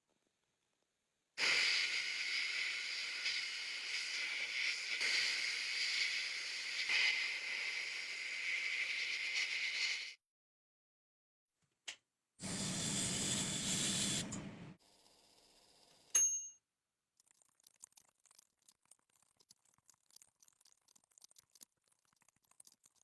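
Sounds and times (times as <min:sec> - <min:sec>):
spraying hiss: 0:01.4 - 0:10.2, 0:12.4 - 0:14.8.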